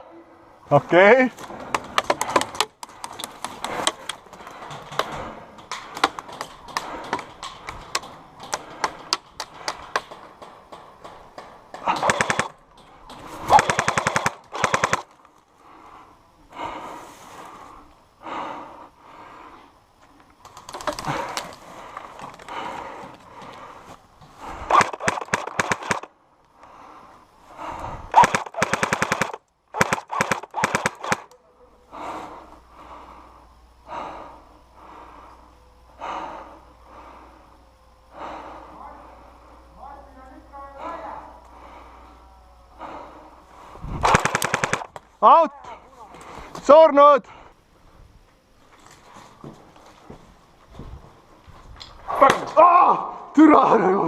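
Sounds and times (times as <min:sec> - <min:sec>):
airsoft guns firing: 0:01.6 - 0:15.2, 0:24.7 - 0:26.1, 0:28.1 - 0:31.3, 0:44.0 - 0:45.0.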